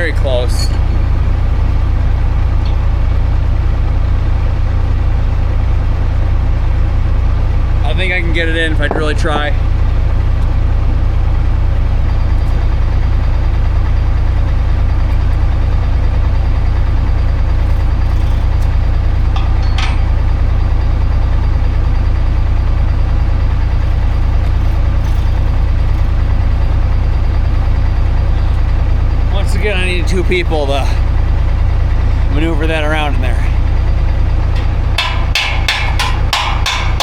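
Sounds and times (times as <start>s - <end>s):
tractor engine idling: 0.0s - 37.0s
short metallic clink: 19.4s - 20.5s.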